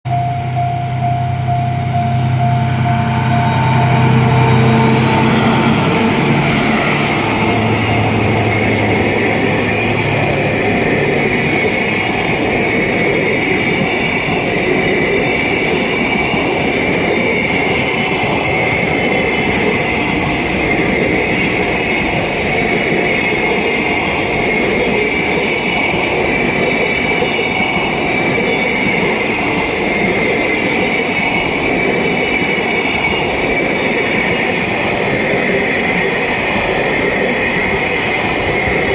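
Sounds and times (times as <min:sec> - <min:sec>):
locomotive engine hum: 0:00.1 - 0:15.6
freight wagons rumbling on rails: 0:00.1 - 0:38.9
high-pitched wheel squeal: 0:00.1 - 0:38.9.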